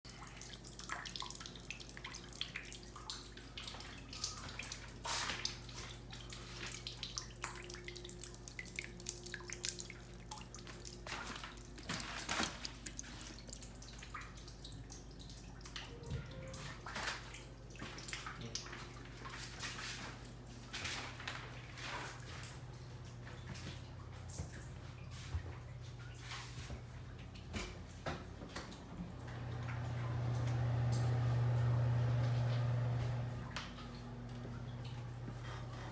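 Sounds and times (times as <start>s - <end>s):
water dripping and splashing: 0.1s - 35.9s.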